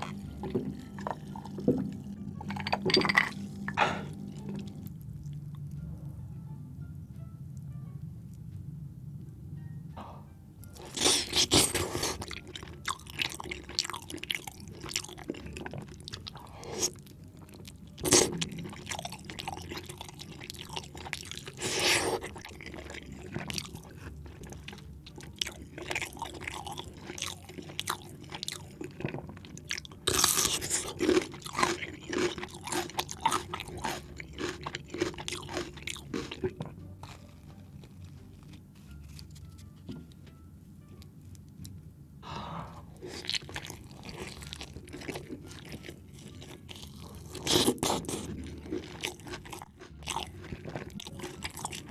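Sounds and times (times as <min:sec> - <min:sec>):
wet chewing and smacking: 0:10.8 - 0:38.6, 0:43.0 - 0:51.9
crunchy bites: 0:30.1 - 0:37.6.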